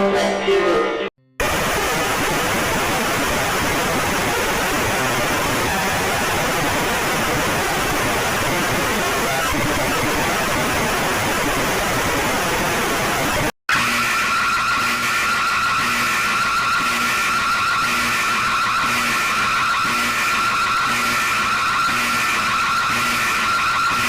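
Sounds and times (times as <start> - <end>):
loud static hiss: 1.4 - 13.5.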